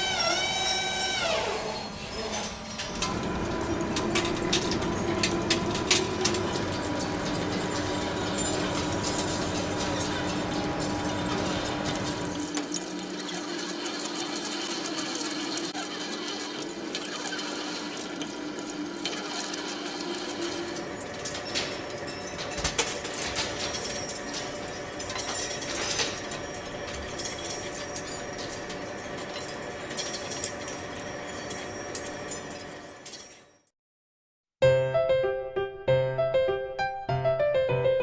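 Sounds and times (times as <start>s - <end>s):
industrial machinery humming: 0.0s - 33.1s.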